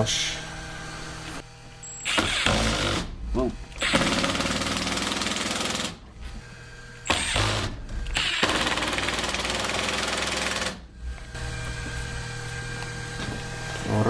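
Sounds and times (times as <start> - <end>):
impact driver hammering screws: 2.0 - 3.1, 3.8 - 6.0, 7.0 - 10.8.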